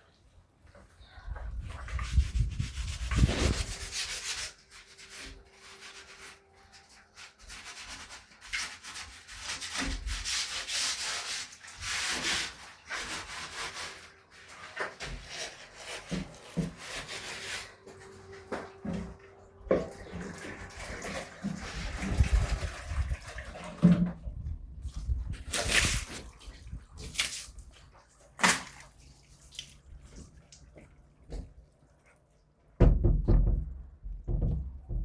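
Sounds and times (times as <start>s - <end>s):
cloth scrubbing a surface: 1.6s - 19.1s.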